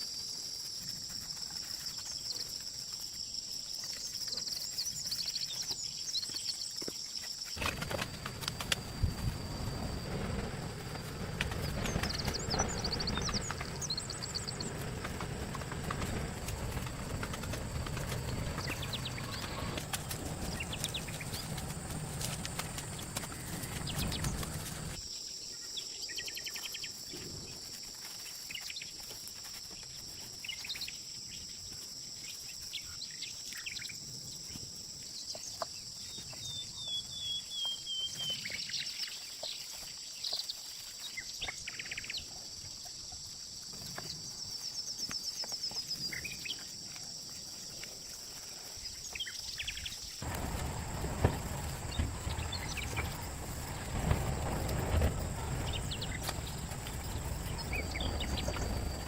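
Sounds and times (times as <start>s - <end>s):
bird chirps: 10.9s - 24.9s, 48.8s - 53.8s, 55.0s - 59.0s.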